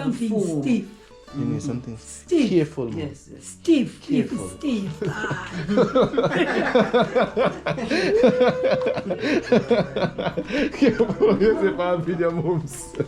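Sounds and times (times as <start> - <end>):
people chuckling: 4.9 - 13.0.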